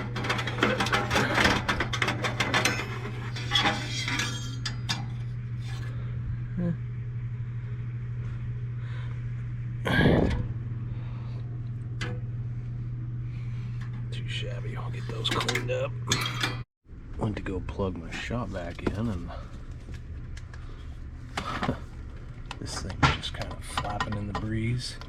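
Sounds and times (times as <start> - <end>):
hand tools scraping metal: 0.0 - 5.9
steady low hum: 0.0 - 25.0.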